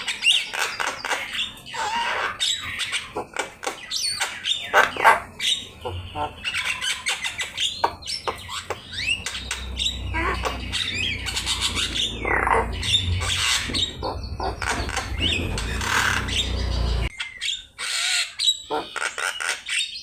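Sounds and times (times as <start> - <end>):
myna bird singing: 0.0 - 17.7, 18.3 - 20.0
low rumble: 8.1 - 17.1.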